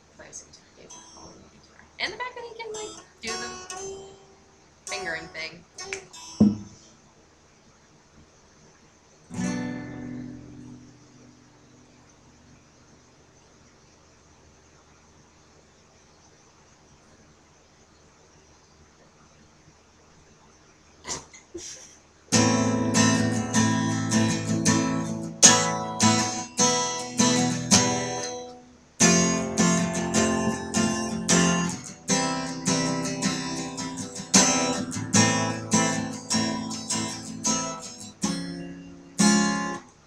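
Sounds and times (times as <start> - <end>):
acoustic guitar chords: 0.0 - 6.8, 9.3 - 12.8, 22.3 - 40.0.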